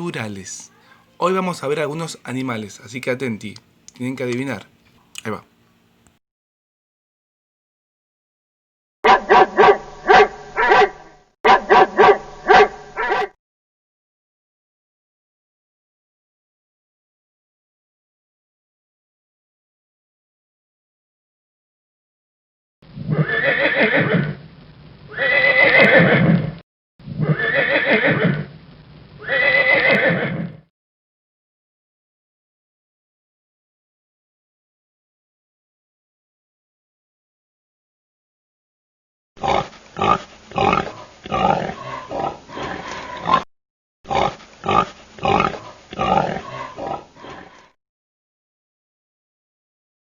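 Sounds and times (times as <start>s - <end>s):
recorded animal call: 9.1s - 13.4s, 22.9s - 30.7s, 39.4s - 43.5s, 44.1s - 47.8s
short loud animal calls: 25.1s - 26.4s, 29.2s - 30.6s.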